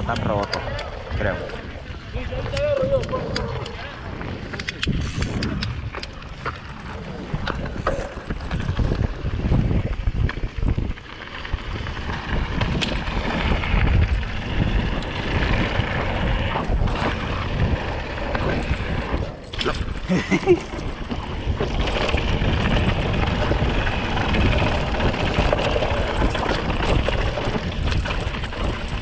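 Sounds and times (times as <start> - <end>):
bike clicks and rattles: 0.0 - 29.0
tyres rumbling on dirt trail: 0.0 - 29.0
wind rushing over microphone: 0.0 - 29.0.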